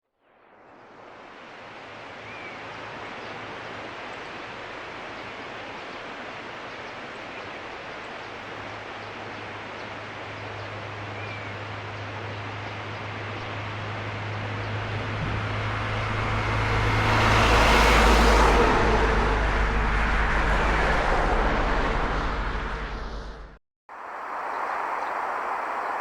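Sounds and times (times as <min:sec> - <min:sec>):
outdoor rushing noise: 0:13.2 - 0:26.0.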